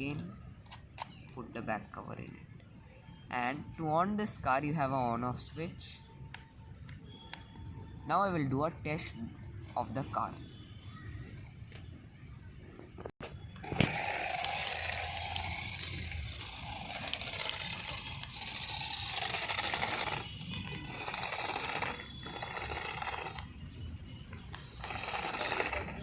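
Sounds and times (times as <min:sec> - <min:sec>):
toy car motor whirring: 0:13.6 - 0:23.7, 0:24.4 - 0:26.0.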